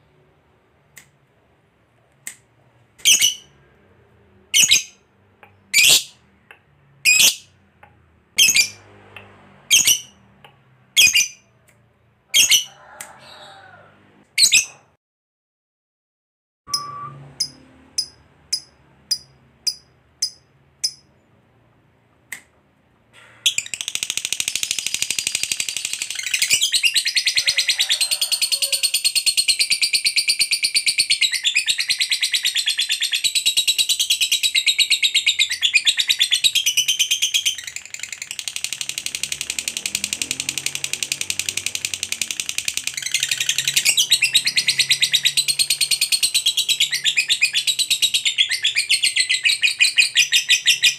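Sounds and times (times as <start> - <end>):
lovebird chirps and rapid trill: 3.0 - 3.5, 4.5 - 5.0, 7.0 - 7.5, 8.4 - 8.8, 9.7 - 10.2, 11.0 - 11.5, 16.7 - 21.2, 23.5 - 27.4, 29.0 - 50.9.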